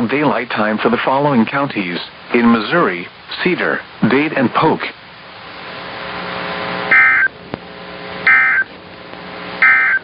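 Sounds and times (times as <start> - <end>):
radio static: 6.1 - 7.3, 8.2 - 8.7
warbling digital data bursts: 6.9 - 7.3, 8.3 - 8.7.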